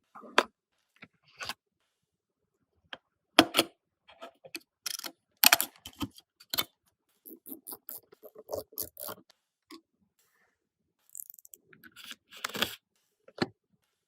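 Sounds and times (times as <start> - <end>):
computer parts clicking and clacking: 7.3 - 9.3, 11.1 - 12.7.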